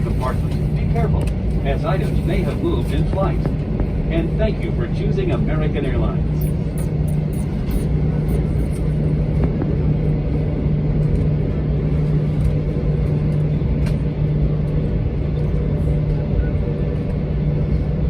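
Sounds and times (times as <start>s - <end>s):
aircraft cabin rumble: 0.0s - 18.0s
engine and air system hum: 0.0s - 18.0s.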